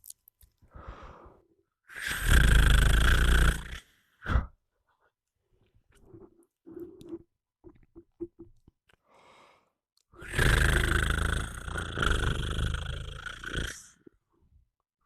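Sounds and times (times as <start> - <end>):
person breathing: 0.6 - 2.3, 3.6 - 5.1, 9.0 - 10.6
person snoring: 0.8 - 4.6, 10.2 - 14.0.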